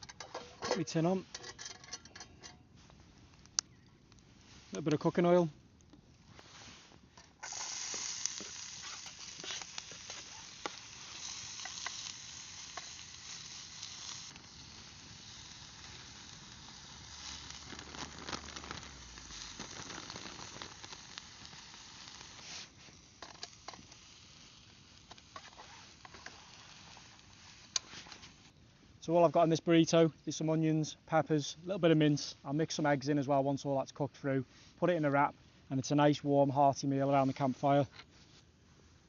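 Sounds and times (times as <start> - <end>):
food sizzling in hot oil: 7.4 - 28.5.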